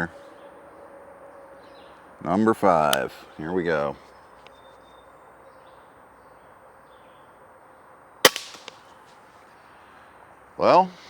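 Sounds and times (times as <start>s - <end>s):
air rifle shot: 8.3s - 8.8s.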